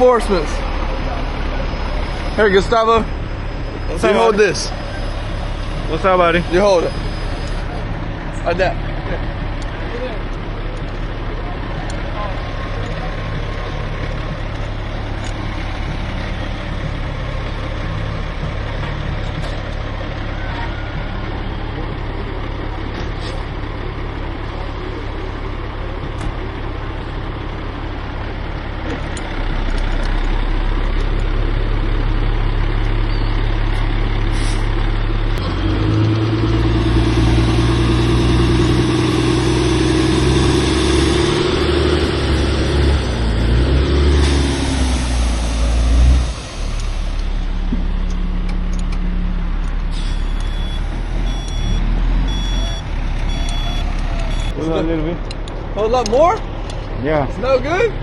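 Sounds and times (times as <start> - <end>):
truck engine running: 0.0 - 58.0.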